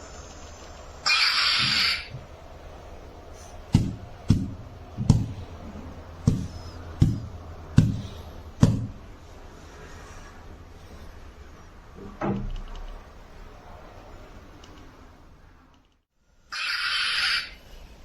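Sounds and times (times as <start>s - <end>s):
steady low hum: 0.0s - 16.6s
toy lightsaber hissing burst: 1.0s - 2.1s, 16.5s - 17.6s.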